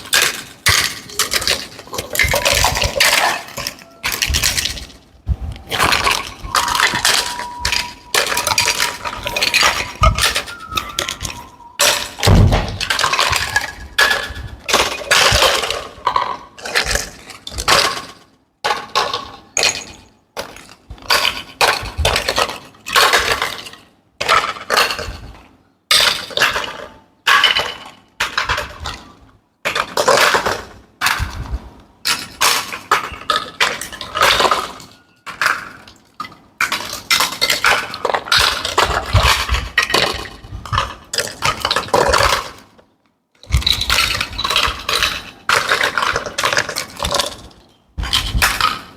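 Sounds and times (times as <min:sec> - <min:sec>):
plastic toy pieces clicking: 0:00.0 - 0:12.3.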